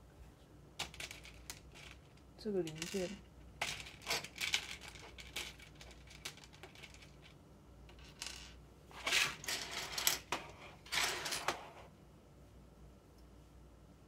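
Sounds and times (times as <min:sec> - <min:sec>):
plastic toy bricks clicking and rattling: 0:00.8 - 0:11.5.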